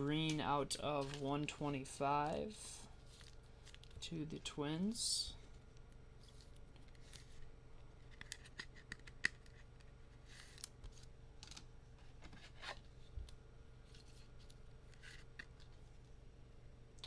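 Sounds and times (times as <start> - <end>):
soft swishes of card packs: 0.2 - 1.5.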